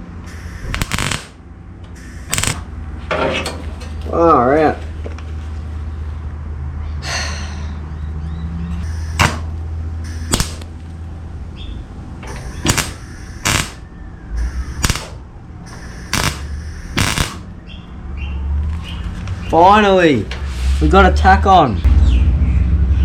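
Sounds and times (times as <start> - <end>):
steady low hum: 0.0 - 4.1, 8.8 - 18.0
welder arcing: 0.3 - 2.7, 8.9 - 10.8, 12.3 - 17.6.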